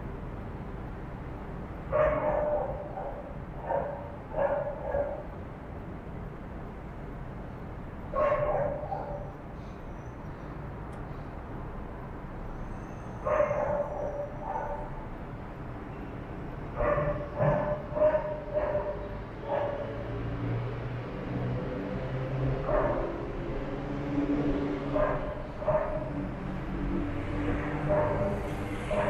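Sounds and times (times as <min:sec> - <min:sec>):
dog barking: 0:01.9 - 0:05.3, 0:08.1 - 0:09.3, 0:13.2 - 0:15.0, 0:16.7 - 0:20.2, 0:22.6 - 0:23.2, 0:24.9 - 0:26.3, 0:27.6 - 0:29.0.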